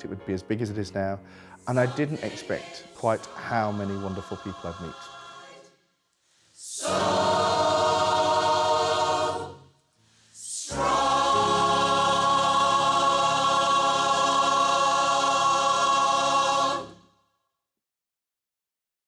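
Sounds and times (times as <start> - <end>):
choir singing held chords: 1.3 - 17.2.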